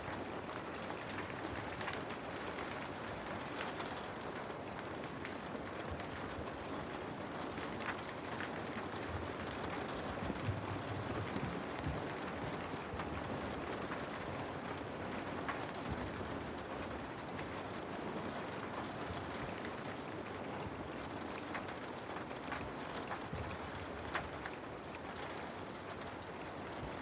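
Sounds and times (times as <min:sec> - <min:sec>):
steady rain falling: 0:00.0 - 0:27.0
drops ticking on window pane: 0:07.5 - 0:16.8.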